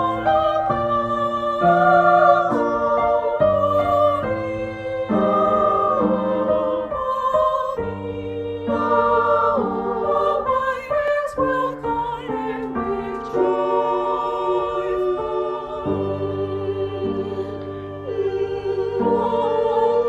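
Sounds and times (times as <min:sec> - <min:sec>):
piano accompaniment: 0:00.0 - 0:20.0
women's choir singing: 0:00.0 - 0:20.0.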